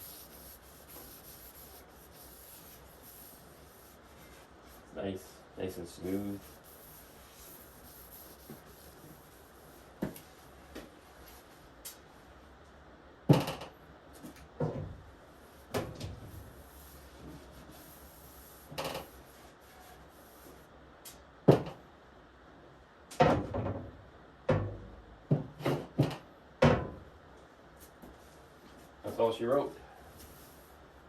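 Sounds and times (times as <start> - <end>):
towel rubbing wood: 0.0 - 4.9, 6.0 - 10.6
knocks and thumps of wood: 14.6 - 15.0, 21.5 - 21.8, 24.5 - 27.0.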